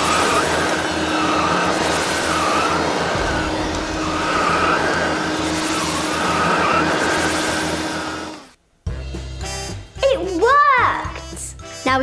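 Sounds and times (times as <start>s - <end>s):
vacuum cleaner whirring: 0.0s - 8.6s.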